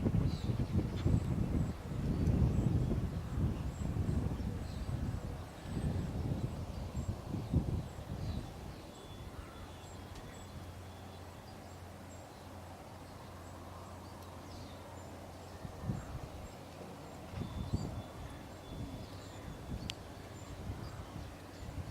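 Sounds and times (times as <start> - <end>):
wind gusts on microphone: 0.0 - 9.6, 15.2 - 21.9
faint bird chirps: 0.2 - 21.9.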